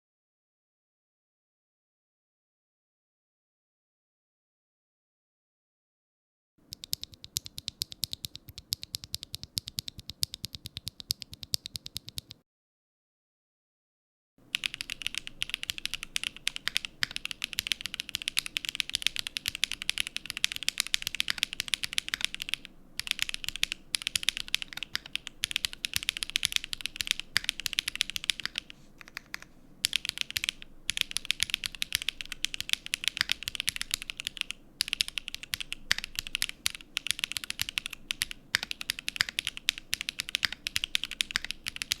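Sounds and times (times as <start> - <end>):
mechanical keyboard typing: 6.6 - 12.4, 14.5 - 42.0.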